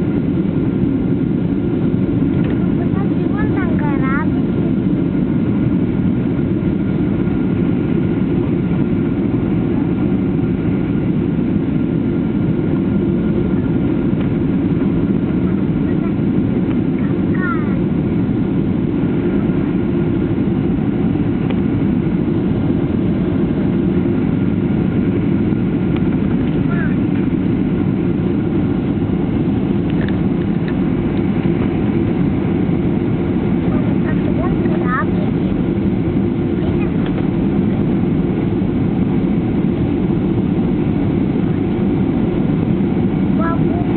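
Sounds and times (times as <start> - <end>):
aircraft engine drone: 0.0 - 43.9.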